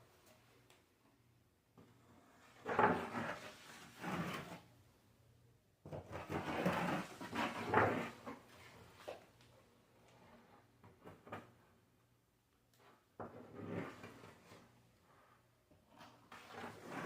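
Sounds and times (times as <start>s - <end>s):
scraping on a hard surface: 1.8s - 4.7s, 5.9s - 9.3s, 10.0s - 11.6s, 12.8s - 17.0s.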